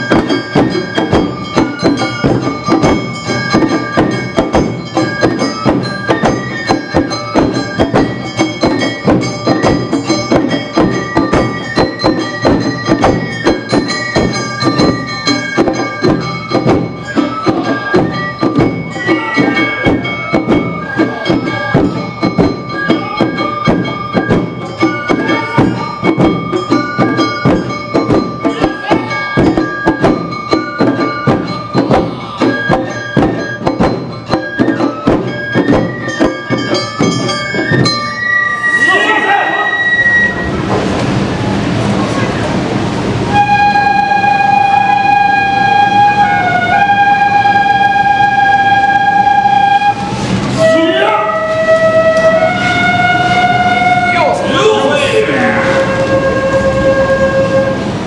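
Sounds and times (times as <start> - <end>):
drum and gong strikes: 0.0 - 58.0
high held flute notes: 11.4 - 27.4, 28.5 - 41.7, 43.2 - 58.0.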